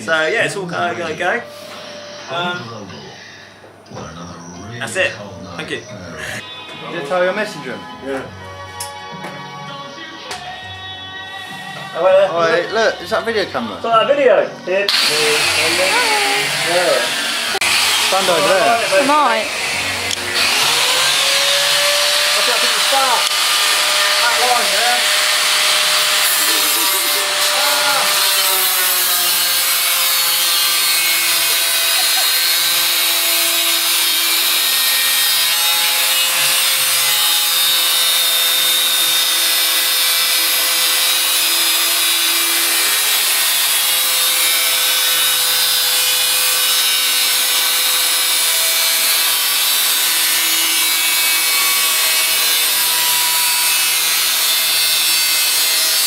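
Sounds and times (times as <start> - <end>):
angle grinder grinding steel: 14.9 - 56.0.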